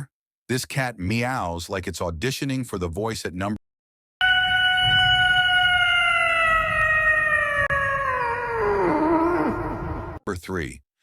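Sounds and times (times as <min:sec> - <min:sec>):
cat meowing: 0:05.2 - 0:09.9.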